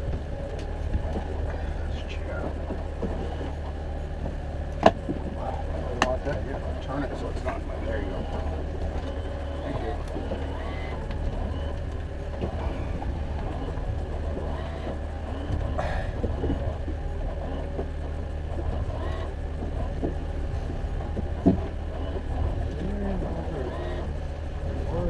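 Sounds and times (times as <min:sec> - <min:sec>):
boat motor droning: 0:00.0 - 0:25.0.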